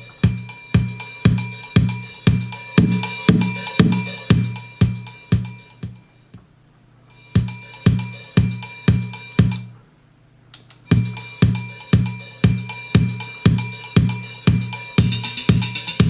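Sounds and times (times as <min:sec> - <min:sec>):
hi-hat ticks: 0:00.0 - 0:06.4, 0:10.6 - 0:16.0
music with kick drum: 0:00.0 - 0:06.5, 0:07.2 - 0:09.8, 0:10.9 - 0:16.0.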